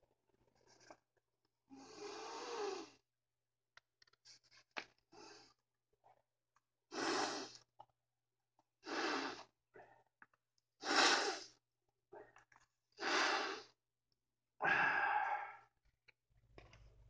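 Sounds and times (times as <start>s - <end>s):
person breathing hard through nose: 8.8s - 10.0s, 10.8s - 11.6s, 13.0s - 13.8s, 14.6s - 15.7s
person sighing: 14.6s - 15.7s.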